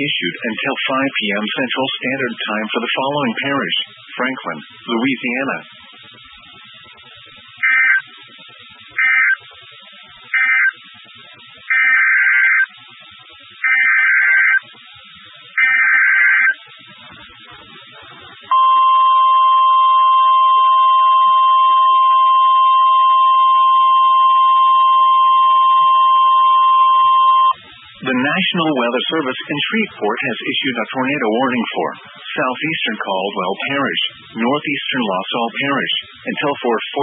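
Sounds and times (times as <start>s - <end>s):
buzzy data tone bursts: 0.0s - 37.0s
faint radio hiss: 0.0s - 37.0s
loud single-pitch alarm tone: 7.6s - 8.2s, 8.9s - 9.5s, 10.3s - 10.9s, 11.6s - 12.8s, 13.6s - 14.6s, 15.5s - 16.8s, 18.5s - 27.7s.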